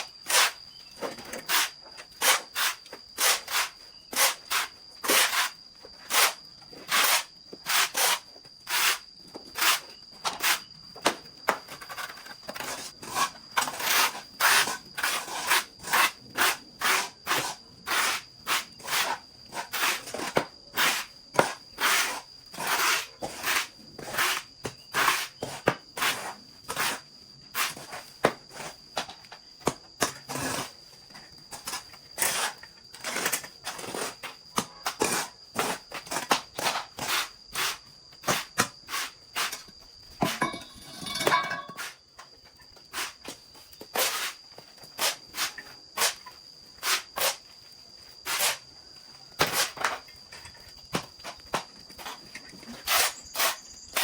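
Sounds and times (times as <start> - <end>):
high-pitched insect drone: 51.9 - 54.0.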